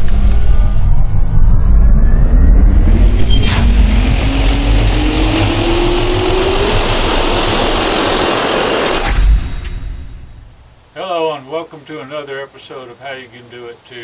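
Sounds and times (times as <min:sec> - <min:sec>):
engine roar with rising whine: 0:00.0 - 0:10.9.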